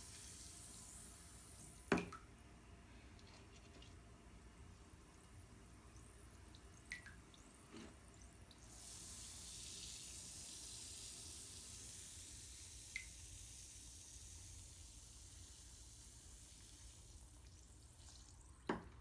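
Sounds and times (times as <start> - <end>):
water drips and plinks: 5.9 - 7.6
bath bomb fizzing: 8.6 - 19.0.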